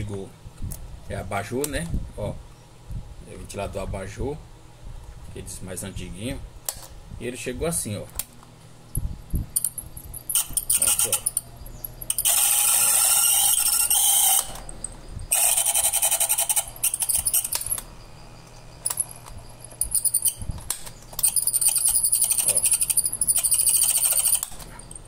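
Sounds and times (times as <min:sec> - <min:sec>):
electric fan motor humming: 0:00.0 - 0:25.0
metallic rattling and scraping: 0:09.0 - 0:25.0.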